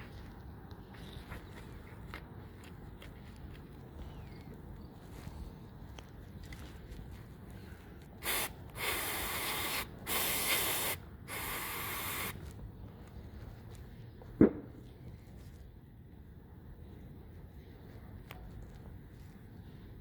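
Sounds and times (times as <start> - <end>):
aerosol spray hissing: 8.2 - 12.4.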